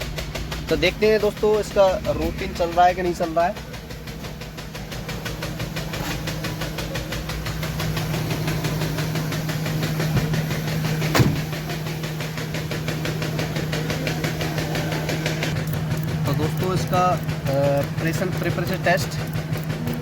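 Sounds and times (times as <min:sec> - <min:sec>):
diesel engine idling: 0:00.0 - 0:20.0.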